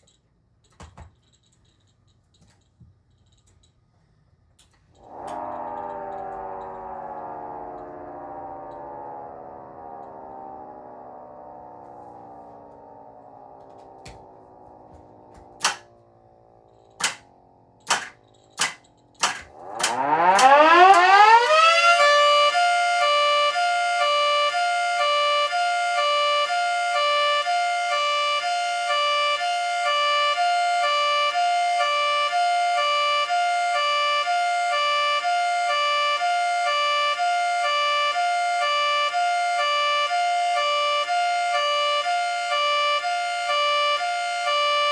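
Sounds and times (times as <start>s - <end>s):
siren winding: 4.7s - 16.0s, 16.6s - 44.9s
siren hi-lo signal: 5.0s - 44.9s
sharp clicks: 15.4s - 15.9s, 16.8s - 21.2s.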